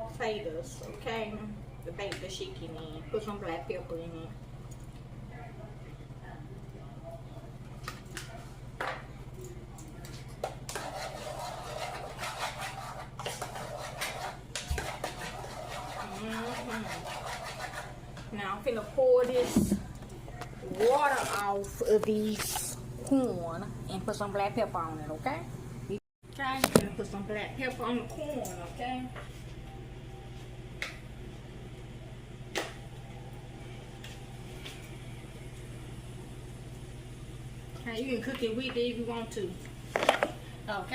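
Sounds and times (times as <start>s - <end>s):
steady low hum: 0.0s - 40.9s
utensil scraping a pot: 10.7s - 18.0s.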